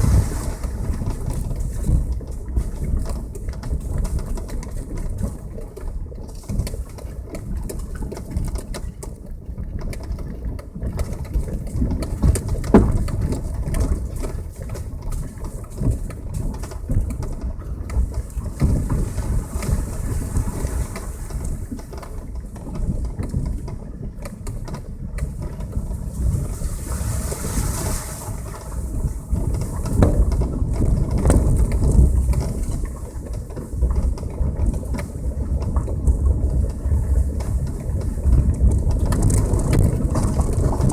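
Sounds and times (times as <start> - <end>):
car knocks and jolts: 12.0 - 14.1, 29.5 - 32.8.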